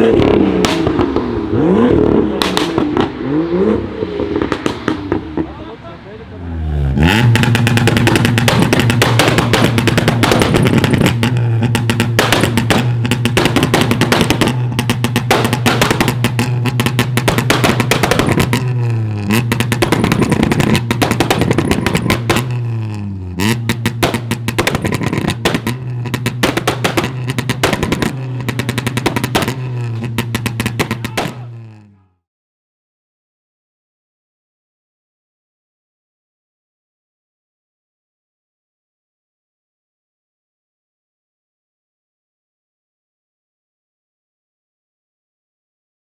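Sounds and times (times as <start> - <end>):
heavy bass line: 0.0 - 32.1
fast dense drum beat: 7.1 - 22.6, 23.5 - 31.5.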